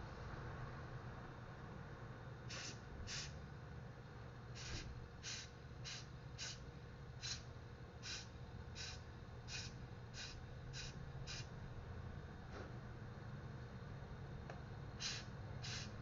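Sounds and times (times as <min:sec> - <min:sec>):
short hissing air puffs: 0:02.5 - 0:03.4, 0:04.6 - 0:06.6, 0:07.2 - 0:11.5, 0:15.0 - 0:16.0.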